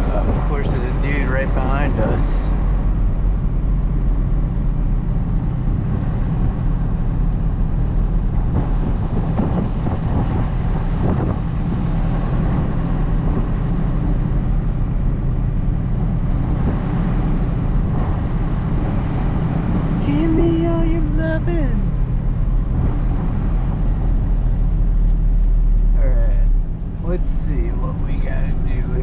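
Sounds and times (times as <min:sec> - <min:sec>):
diesel truck engine drone: 0:00.0 - 0:29.0.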